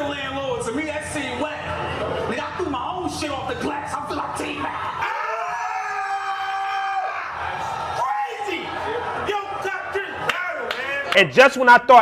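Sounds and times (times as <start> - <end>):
crowd cheering and yelling: 3.6 - 12.0
long held yell: 5.0 - 7.4.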